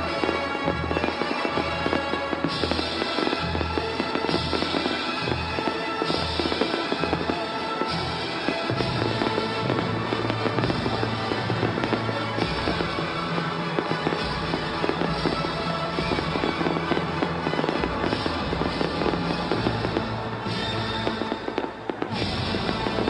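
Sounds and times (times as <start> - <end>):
fireworks bursting and crackling: 0.0 - 23.0
loud music: 0.0 - 23.0.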